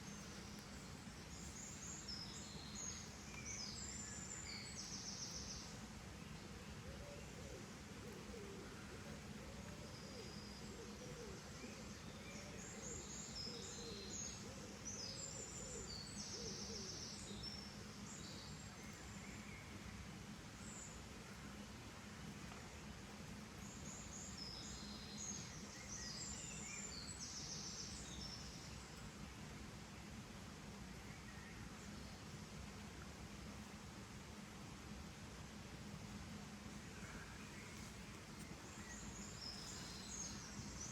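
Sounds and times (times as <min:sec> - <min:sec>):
background hiss: 0:00.0 - 0:40.9
high chirping birdsong: 0:37.0 - 0:40.9.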